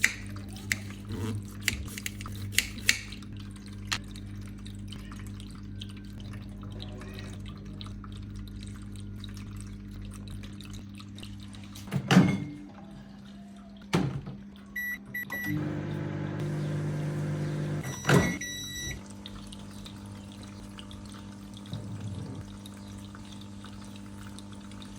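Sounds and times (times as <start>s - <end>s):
microwave oven humming: 14.6s - 24.9s
keypad beeps: 14.8s - 15.6s, 17.8s - 19.0s.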